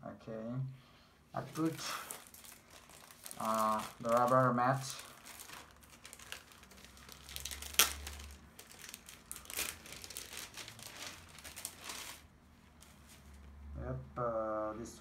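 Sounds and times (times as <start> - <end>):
plastic packaging crinkling: 1.4 - 13.3.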